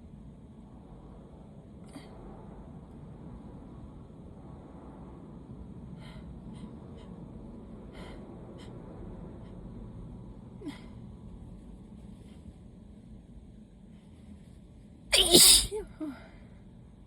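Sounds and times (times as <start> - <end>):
person's hitching breaths: 15.2 - 15.8.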